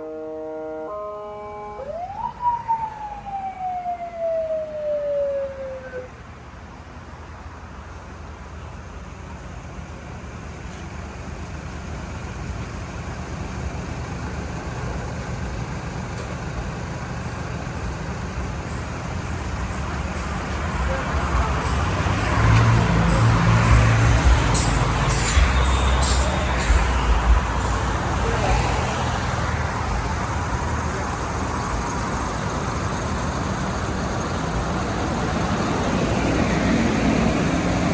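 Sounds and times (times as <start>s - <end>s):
road noise: 0.0s - 37.9s
motor vehicle running: 9.0s - 37.9s.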